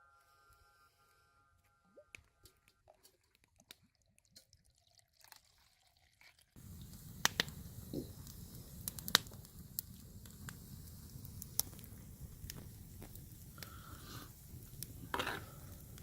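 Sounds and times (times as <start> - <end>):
campfire crackling and popping: 6.6 - 16.0
faint clicks: 6.8 - 16.0.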